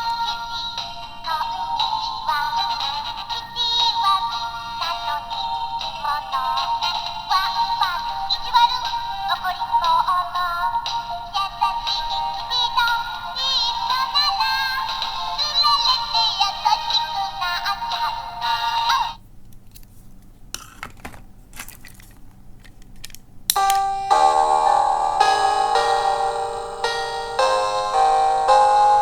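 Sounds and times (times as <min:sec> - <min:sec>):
electronic toy sung melody: 0:00.0 - 0:19.2, 0:23.6 - 0:29.0
handling clicks: 0:20.6 - 0:23.8
bright electronic chime tone: 0:23.6 - 0:29.0.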